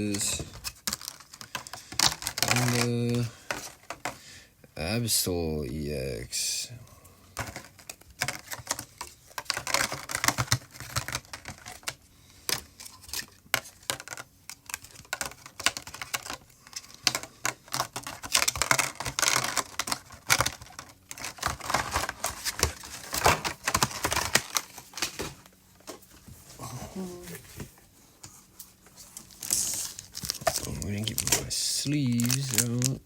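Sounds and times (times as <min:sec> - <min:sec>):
card packaging crinkling: 0:00.0 - 0:04.2, 0:07.4 - 0:26.0, 0:28.7 - 0:33.0.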